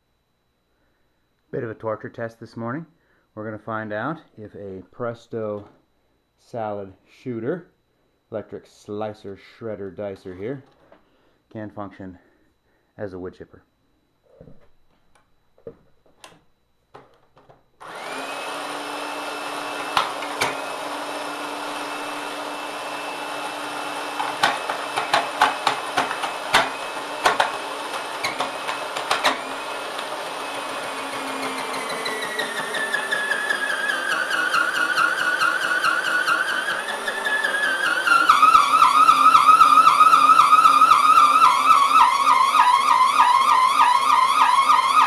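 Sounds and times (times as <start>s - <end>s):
electric slicer motor whining: 17.8s - 45.0s.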